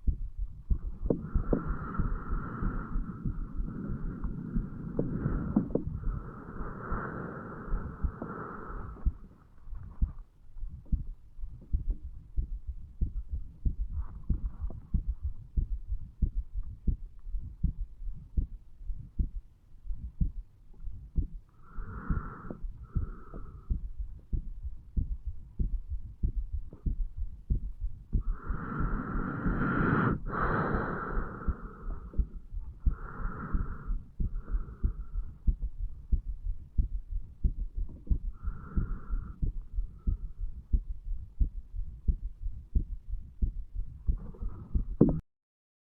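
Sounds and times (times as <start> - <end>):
heartbeat lub-dub: 0.0 - 45.2
wheezy breathing: 1.1 - 9.4, 21.6 - 23.9, 28.2 - 35.6, 38.3 - 40.6.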